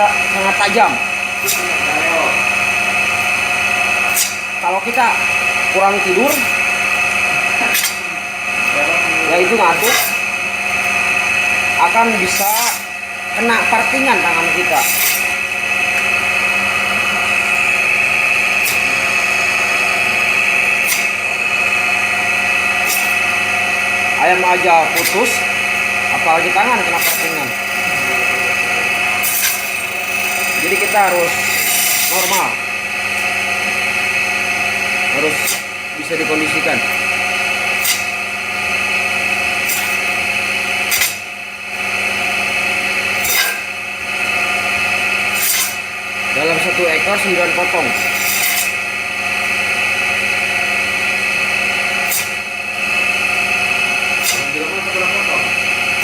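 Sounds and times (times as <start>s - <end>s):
electric saw whining: 0.0s - 56.0s
blade cutting through chicken: 18.5s - 21.4s, 22.7s - 23.4s, 54.2s - 54.6s.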